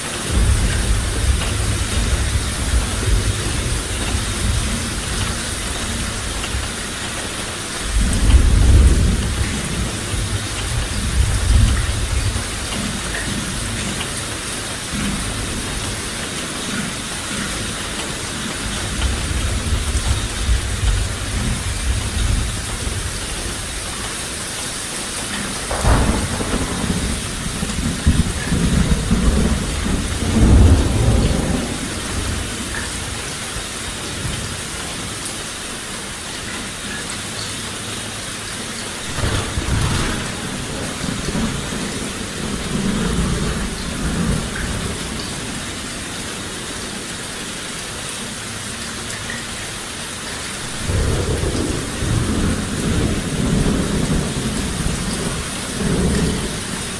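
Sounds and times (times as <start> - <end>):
heavy rain hissing: 0.0 - 56.9
rolling thunder: 0.3 - 13.8, 25.5 - 33.2, 39.0 - 45.8, 50.6 - 56.9.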